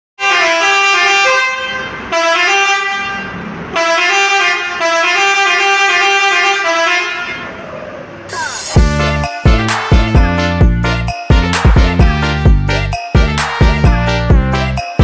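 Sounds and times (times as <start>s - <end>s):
multi-tone air horn tune: 0.2s - 7.5s.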